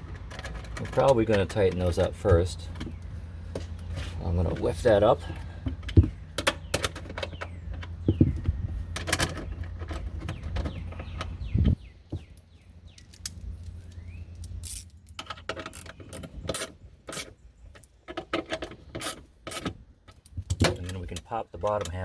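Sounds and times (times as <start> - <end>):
metal latch clicking and clinking: 14.4 - 14.9, 15.8 - 17.3, 19.0 - 19.7.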